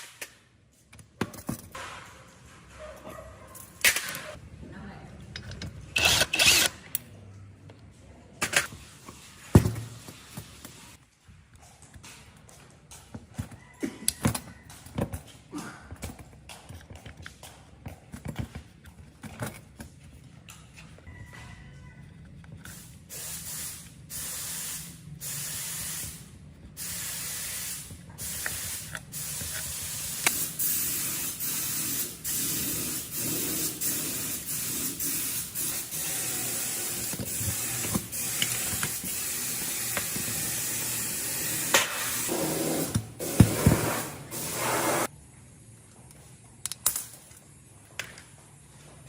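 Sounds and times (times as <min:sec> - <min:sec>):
pressurised spray hissing: 0:22.7 - 0:45.1.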